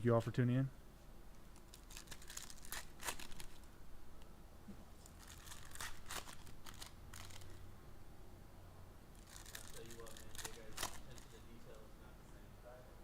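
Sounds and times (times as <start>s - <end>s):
card pack wrappers crinkling and tearing: 1.5s - 3.7s, 5.0s - 7.6s, 9.2s - 11.4s.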